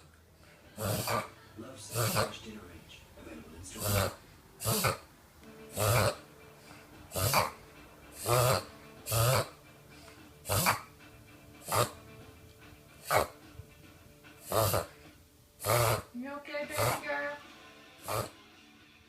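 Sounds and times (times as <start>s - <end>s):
dog reverse sneezing snorts: 0.8s - 1.3s, 1.9s - 2.4s, 3.8s - 5.1s, 5.7s - 10.9s, 11.6s - 12.0s, 13.0s - 13.4s, 14.4s - 15.0s, 15.6s - 16.1s, 18.0s - 18.4s.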